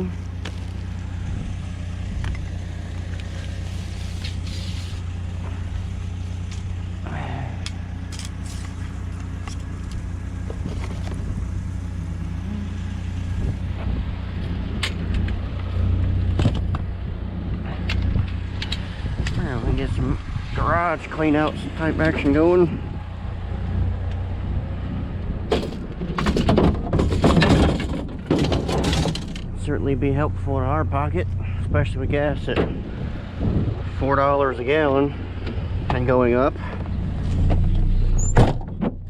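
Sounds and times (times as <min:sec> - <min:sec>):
pickup engine and road drone: 0:00.0 - 0:39.0
small rattles and knocks: 0:25.5 - 0:29.5.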